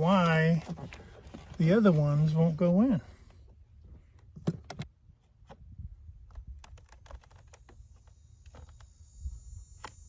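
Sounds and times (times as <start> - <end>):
small screws and plastic parts clicking: 6.2 - 9.1.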